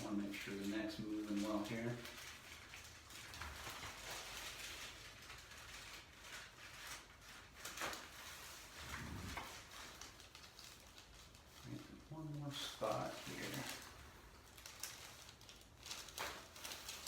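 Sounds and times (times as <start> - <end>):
faint handling and rustling: 0.0 - 17.0.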